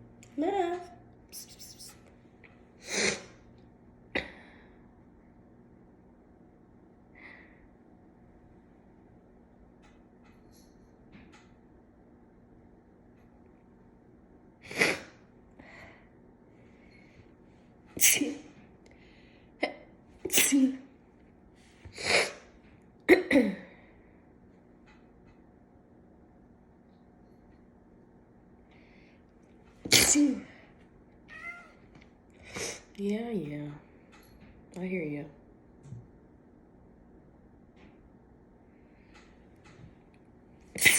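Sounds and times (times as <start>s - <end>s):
woman sneezing: 18.0s - 18.5s, 20.3s - 20.8s, 29.9s - 30.5s.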